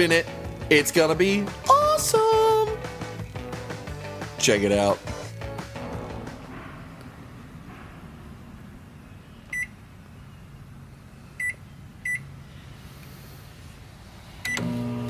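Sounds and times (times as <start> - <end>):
microwave keypad beeping: 11.4 - 12.2.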